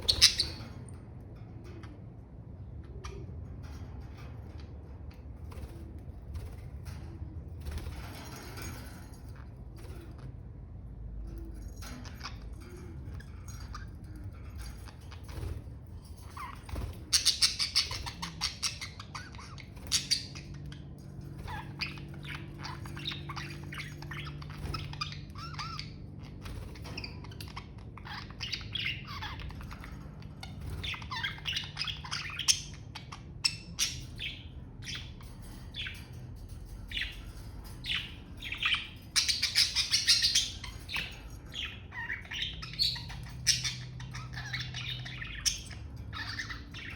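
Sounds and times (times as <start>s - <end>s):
budgerigars chirping and warbling: 0.0s - 1.0s, 11.1s - 46.9s.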